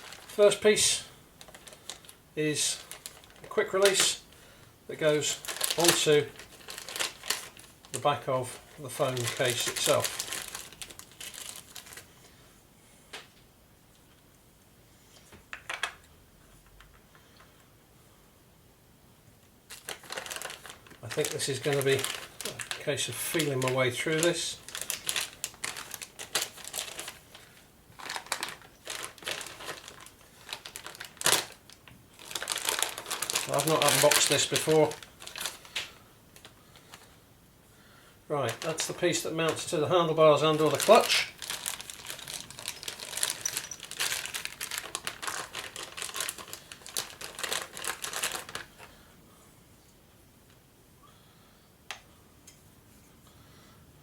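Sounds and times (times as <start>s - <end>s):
plastic bags crinkling: 0.0s - 12.2s, 19.7s - 37.2s, 38.3s - 49.0s.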